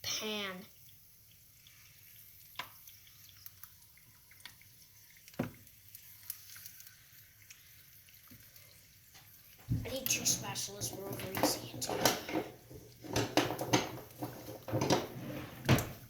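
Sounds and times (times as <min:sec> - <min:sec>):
eggs sizzling in oil: 0:00.0 - 0:15.1
small pops and crackles: 0:00.8 - 0:09.8.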